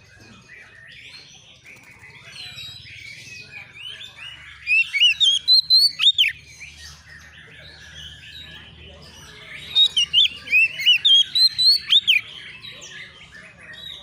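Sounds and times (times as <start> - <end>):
bird chirps and whistles: 4.6 - 6.8, 9.7 - 12.3
sharp whistled bird notes: 4.6 - 7.0, 9.6 - 12.3.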